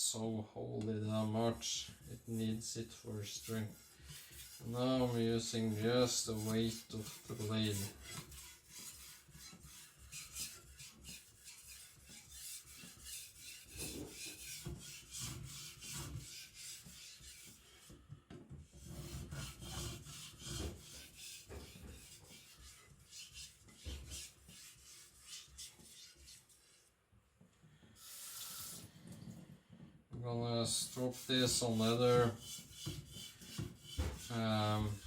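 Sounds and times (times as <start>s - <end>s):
blade scraping on whetstone: 3.2s - 17.7s, 18.8s - 26.8s, 30.7s - 35.0s.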